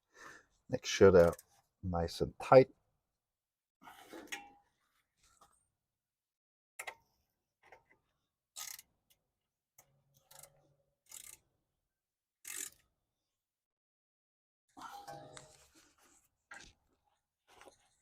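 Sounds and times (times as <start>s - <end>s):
ratchet wrench clicking: 8.6s - 8.8s, 11.1s - 11.4s, 12.4s - 12.8s.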